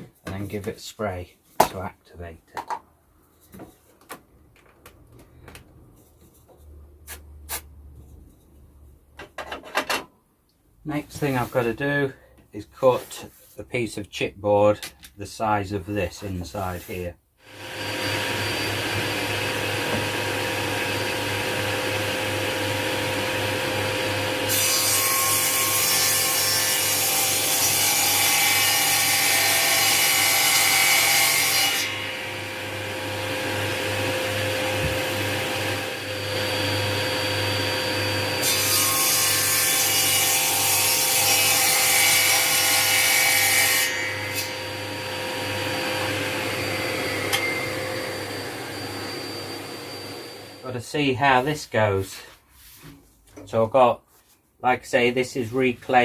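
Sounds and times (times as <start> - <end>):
power saw cutting chipboard: 17.0 - 50.7.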